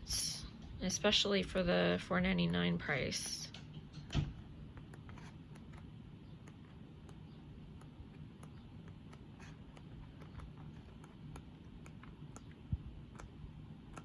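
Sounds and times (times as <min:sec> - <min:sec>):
low room hum: 0:00.0 - 0:14.0.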